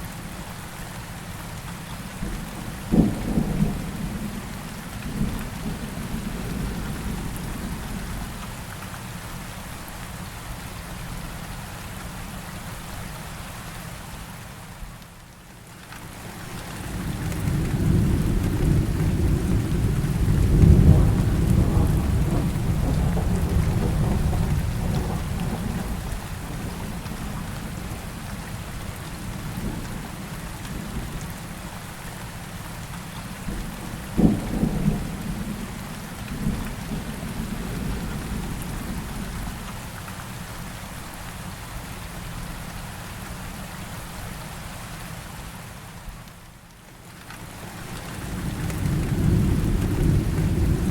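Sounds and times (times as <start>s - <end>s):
heavy rain: 0.0s - 50.9s
rolling thunder: 16.9s - 28.2s, 33.5s - 39.6s, 48.2s - 50.9s
sharp thunderclap: 17.4s - 26.6s.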